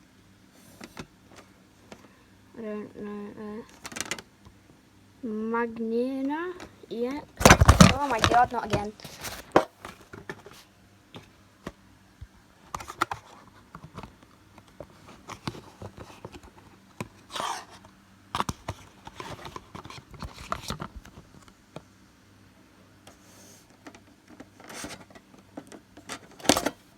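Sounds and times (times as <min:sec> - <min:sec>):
cards tapping and clicking: 0:07.4 - 0:10.5
packaging rustling: 0:07.4 - 0:10.6.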